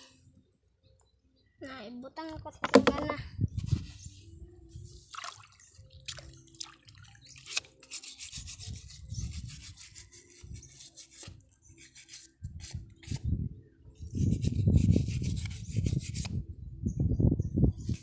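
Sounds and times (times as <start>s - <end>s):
clam shells being scrubbed: 7.5s - 12.3s.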